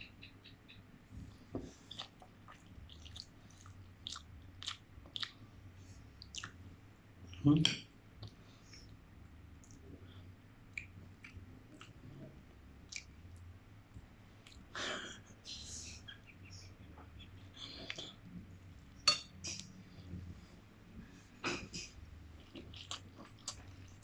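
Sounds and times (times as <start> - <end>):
mouth eating sounds: 1.7 - 5.4, 6.2 - 6.6, 21.4 - 24.0.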